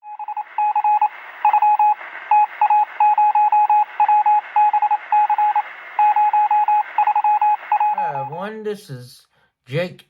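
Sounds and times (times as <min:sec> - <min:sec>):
morse code beeps: 0:00.0 - 0:08.4.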